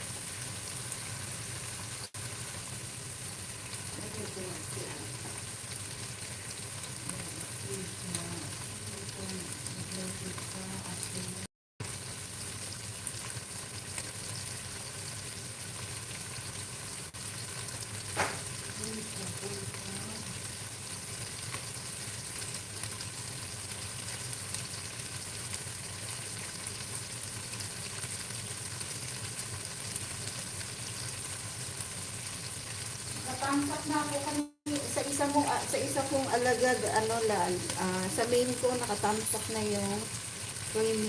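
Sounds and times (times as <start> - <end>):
chicken frying in oil: 0.0 - 41.0
sharp knock: 18.2 - 18.5.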